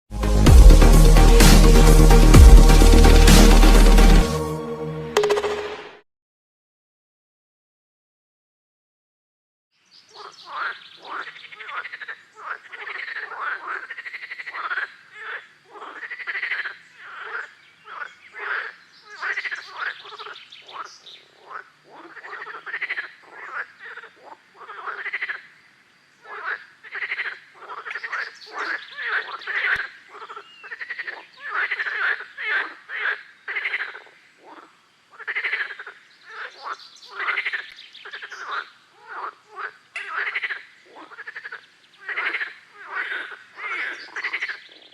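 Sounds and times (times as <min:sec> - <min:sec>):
frogs croaking: 0:10.0 - 0:44.9.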